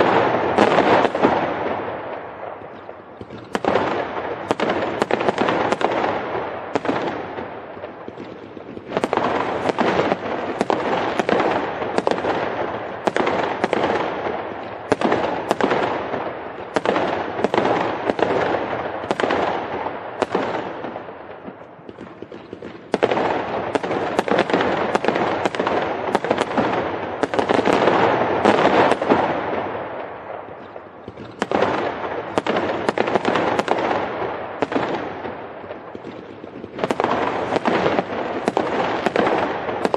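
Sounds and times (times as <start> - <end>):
fireworks bangs and crackle: 0.0 - 39.9.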